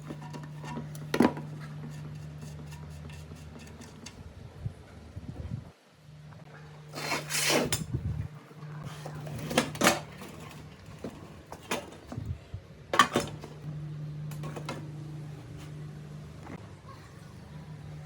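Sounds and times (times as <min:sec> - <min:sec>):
steady low hum: 0:07.7 - 0:18.0.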